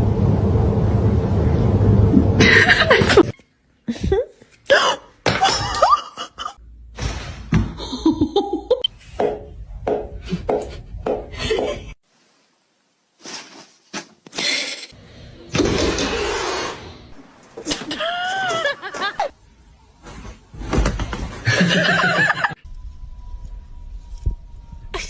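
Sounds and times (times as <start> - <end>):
people laughing: 2.4 - 3.3, 17.7 - 19.3, 21.4 - 22.6.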